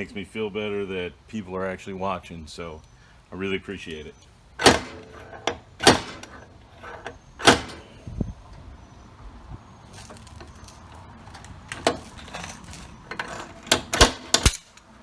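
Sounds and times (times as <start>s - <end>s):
slide hammer metal whacks: 4.6s - 5.2s.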